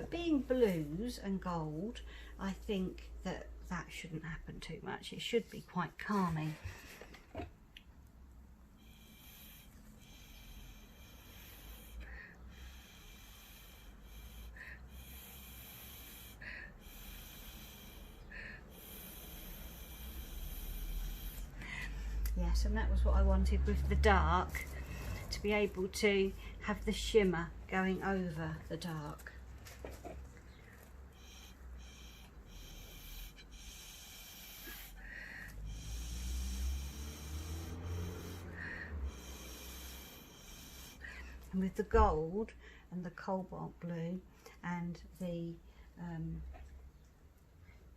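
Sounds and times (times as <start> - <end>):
faint puffs through a straw: 8.8 - 22.3, 29.3 - 41.5.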